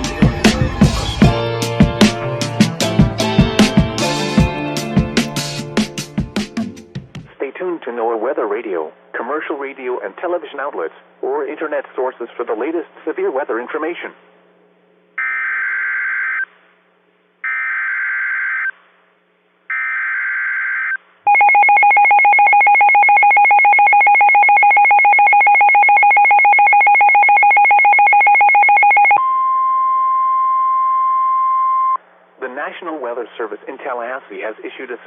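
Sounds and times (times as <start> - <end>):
steady alert tone: 0.0 - 2.4.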